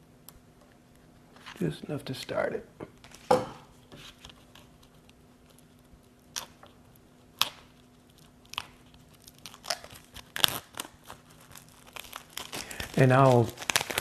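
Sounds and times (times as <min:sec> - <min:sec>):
cellophane wrap crinkling: 0:04.1 - 0:14.0.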